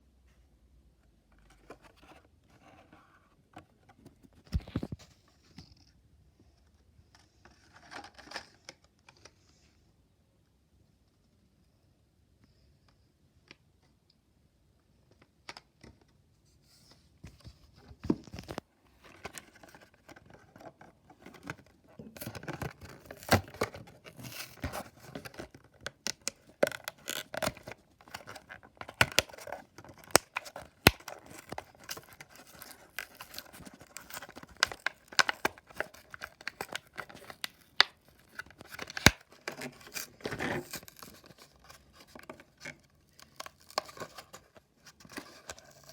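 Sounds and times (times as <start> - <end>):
plastic crinkling: 21.4 - 45.9
packaging clicks and snaps: 26.1 - 41.3.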